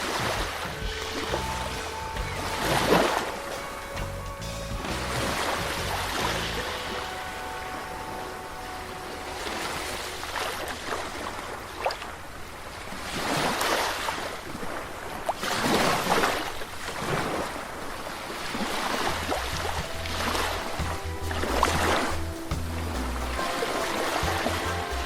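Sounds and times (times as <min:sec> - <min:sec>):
sea waves washing in: 0:05.2 - 0:20.8.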